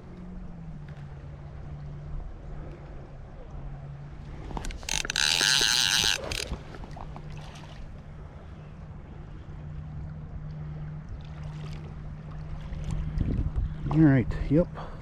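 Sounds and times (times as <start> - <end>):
river water: 0.0 - 15.0
steady low hum: 0.0 - 15.0
wind: 0.0 - 15.0
fishing reel buzzing: 4.5 - 6.7.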